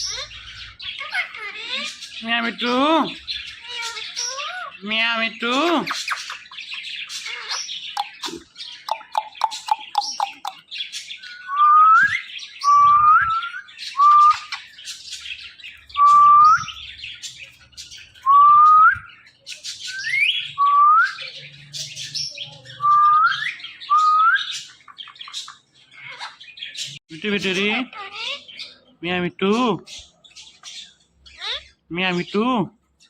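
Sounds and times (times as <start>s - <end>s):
high chirping: 5.6s - 32.6s.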